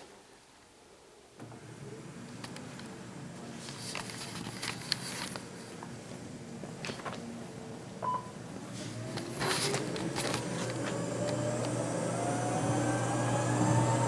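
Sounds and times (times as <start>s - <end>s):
short beep: 8.0s - 8.4s
treadmill motor whine: 8.1s - 14.0s
clicks: 9.1s - 11.8s.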